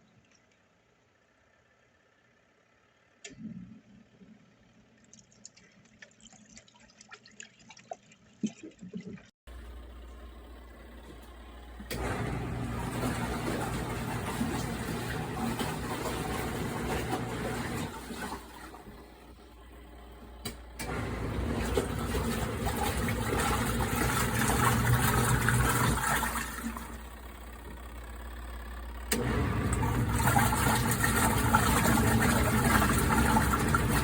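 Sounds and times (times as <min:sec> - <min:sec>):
washing machine motor running: 0:09.5 - 0:34.0.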